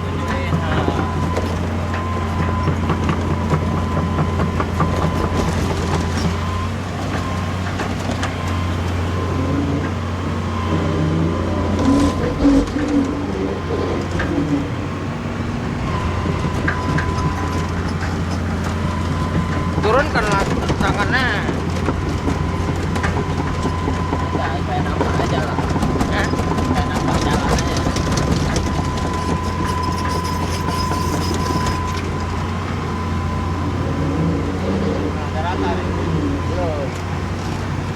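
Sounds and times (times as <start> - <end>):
excavator diesel engine drone: 0.0 - 37.9
thin steady whine: 8.2 - 37.2.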